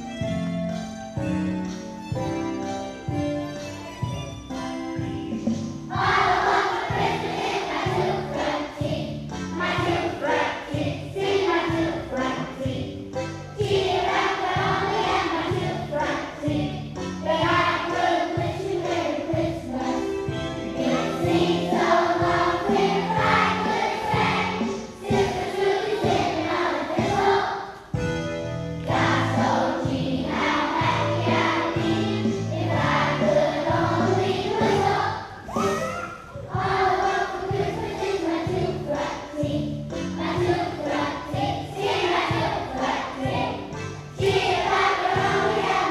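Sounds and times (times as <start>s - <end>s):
instrumental accompaniment: 0.0s - 45.9s
choir singing: 5.9s - 8.8s, 9.6s - 12.8s, 13.7s - 27.8s, 28.9s - 35.5s, 36.4s - 39.4s, 40.2s - 43.6s, 44.2s - 45.9s.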